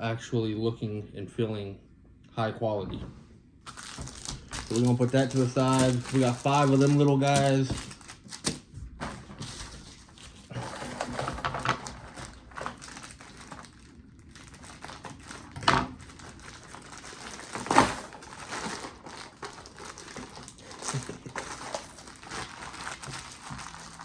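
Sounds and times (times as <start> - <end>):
packaging crinkling and rustling: 3.6 - 24.0.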